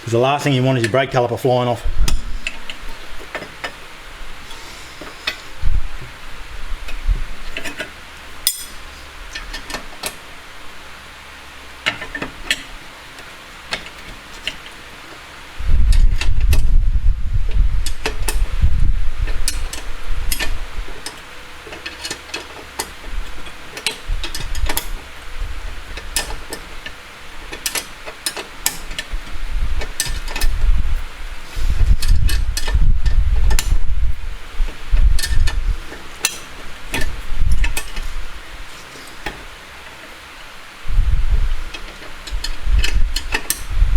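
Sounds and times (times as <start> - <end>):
ratchet spanner clicking: 19.1 - 30.8, 34.7 - 38.3, 41.5 - 43.8.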